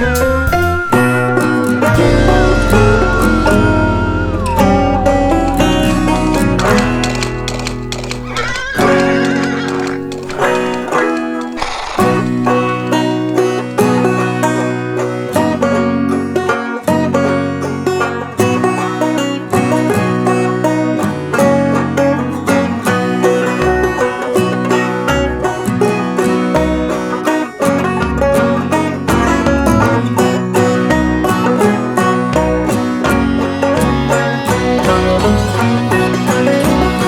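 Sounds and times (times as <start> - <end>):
plucked bass line: 0.0 - 9.2
fast banjo bluegrass tune: 0.0 - 37.0.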